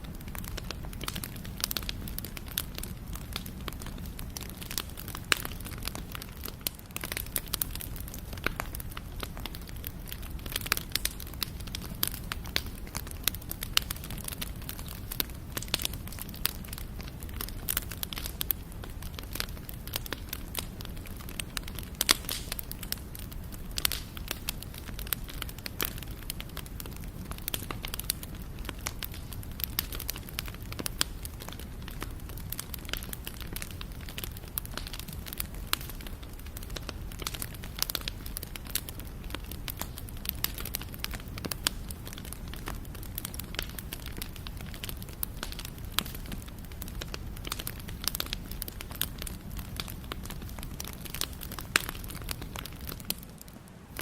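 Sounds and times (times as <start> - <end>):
bonfire crackling and popping: 0.0 - 54.0
fire low rumble: 0.0 - 54.0.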